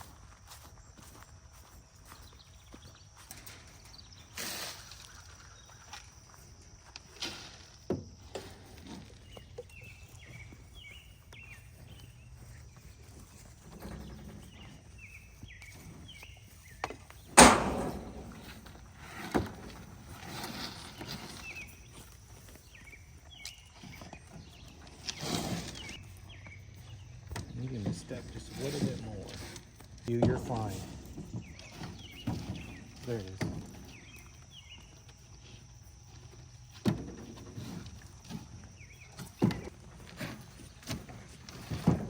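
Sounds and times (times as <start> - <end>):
footsteps: 0.0 - 3.8, 8.8 - 20.2
knocks and clanks: 17.3 - 19.8
loud sharp bang: 17.4 - 18.6.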